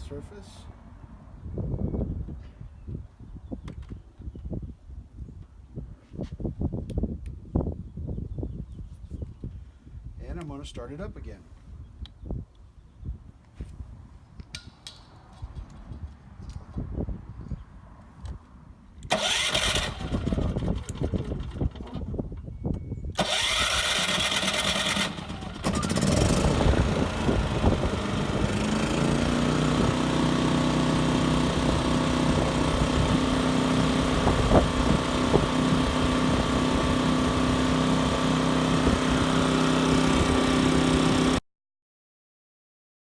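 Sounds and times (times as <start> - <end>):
generator engine running: 19.1 - 22.1, 23.2 - 41.4.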